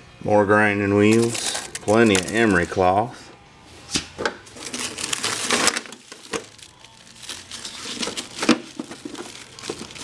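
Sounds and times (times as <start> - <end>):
paper and cloth rustling: 1.1 - 2.9, 3.9 - 10.0.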